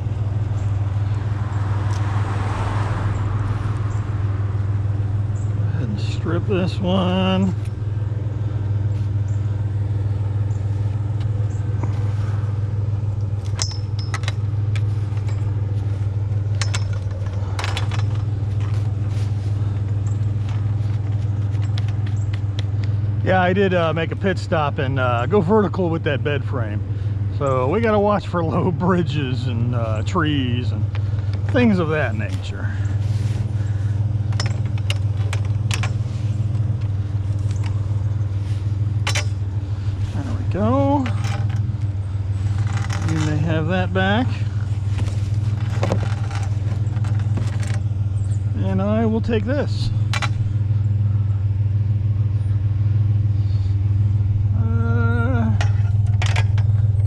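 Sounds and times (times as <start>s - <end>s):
truck engine droning: 0.0s - 57.0s
sharp clicks and rattles: 13.1s - 23.0s, 29.8s - 51.1s, 55.6s - 57.0s.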